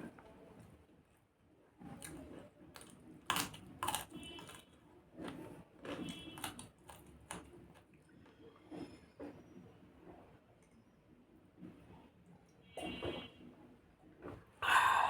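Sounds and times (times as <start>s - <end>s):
person chewing food: 2.0s - 4.6s, 5.2s - 7.9s, 14.6s - 15.0s.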